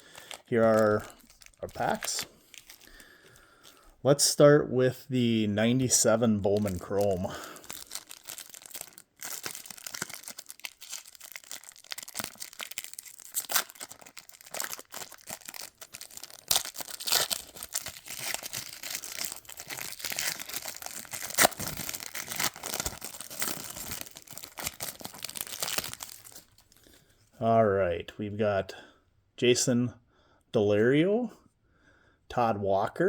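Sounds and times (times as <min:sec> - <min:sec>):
wrapper crinkling and tearing: 0:00.0 - 0:03.9, 0:06.0 - 0:27.0.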